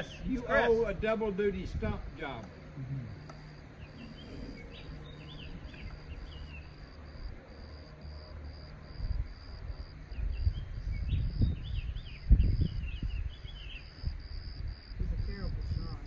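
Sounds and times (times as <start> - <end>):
wind gusts on microphone: 0.0 - 2.9, 8.8 - 16.0
insects chirping: 0.0 - 16.0
bird chirps: 3.1 - 6.9, 10.1 - 14.0.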